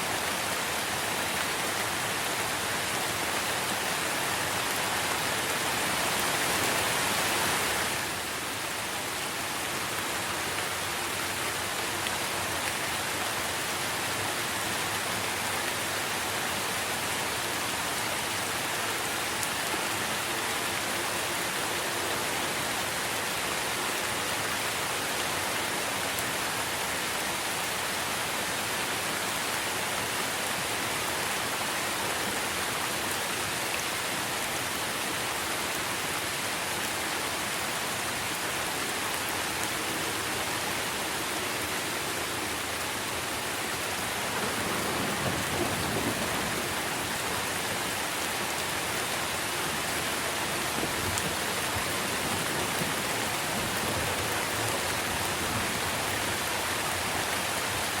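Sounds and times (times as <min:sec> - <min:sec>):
rain falling on trees: 0:00.0 - 0:58.0
low rumble of thunder: 0:44.2 - 0:47.3.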